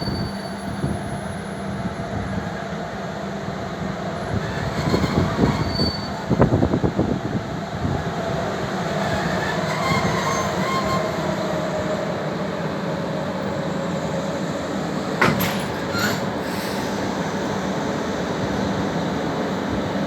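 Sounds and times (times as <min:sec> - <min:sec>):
faint wheel squeal: 0:00.0 - 0:01.7, 0:04.3 - 0:06.4, 0:08.8 - 0:17.4
train wheels rumbling on rail: 0:00.0 - 0:20.0.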